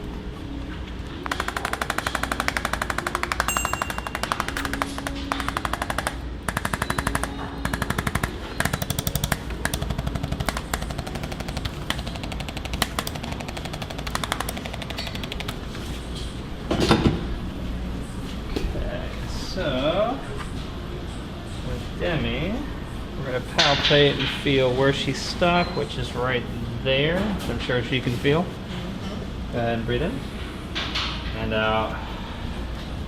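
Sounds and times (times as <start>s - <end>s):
rapid mechanical tapping: 4.2s - 15.6s.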